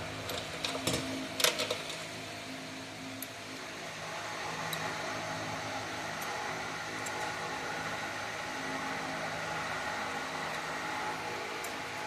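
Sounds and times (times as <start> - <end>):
steady mechanical hum and hiss: 0.0 - 12.0.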